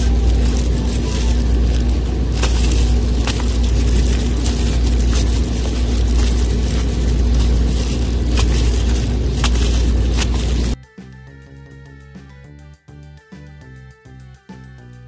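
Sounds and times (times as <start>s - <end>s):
clicks and crackles: 0.0s - 10.8s
faint steady hum: 0.0s - 10.8s
low motor rumble: 0.0s - 10.8s.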